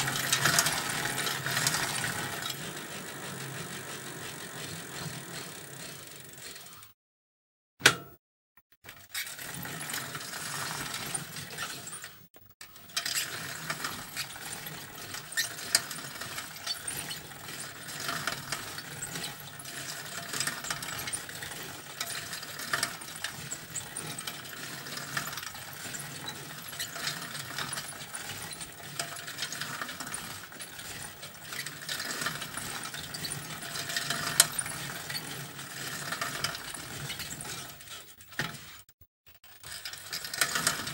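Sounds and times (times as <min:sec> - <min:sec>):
bicycle chain ticking and rattling: 0:00.0 - 0:07.0, 0:09.1 - 0:38.5, 0:39.3 - 0:40.9
sharp click: 0:07.8 - 0:08.2.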